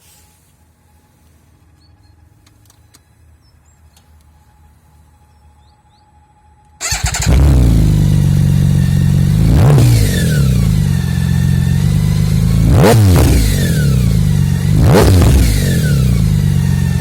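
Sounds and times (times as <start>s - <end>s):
engine revs blipped: 6.8s - 17.0s
motorcycle engine idling loudly: 7.0s - 17.0s.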